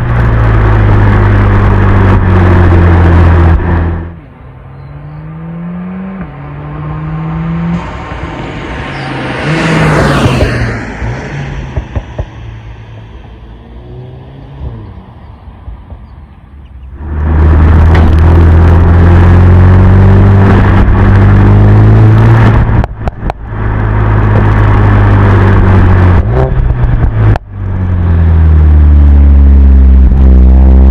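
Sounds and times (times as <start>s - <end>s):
car engine revving: 0.0s - 16.2s, 16.8s - 30.9s
exhaust pops and crackles: 11.7s - 13.1s, 17.2s - 19.1s, 22.2s - 28.4s.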